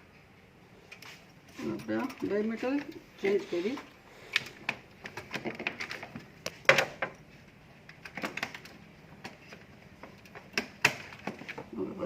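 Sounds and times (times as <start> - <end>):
clicks and knocks of hands working: 7.8 - 11.7.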